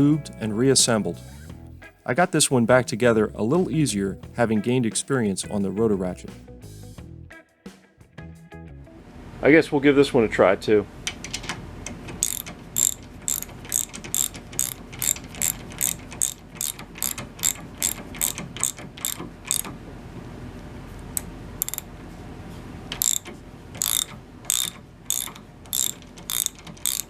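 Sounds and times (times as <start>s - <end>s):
ratchet clicking: 12.2s - 19.7s, 21.6s - 21.8s, 23.0s - 27.0s.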